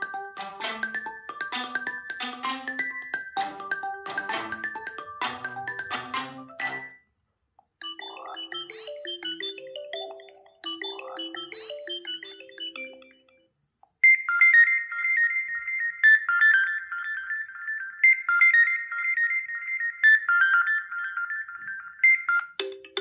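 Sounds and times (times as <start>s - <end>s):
high-pitched ringtone melody: 0.0s - 7.0s, 7.8s - 23.0s
lower ringtone melody: 0.0s - 7.0s, 7.8s - 19.1s.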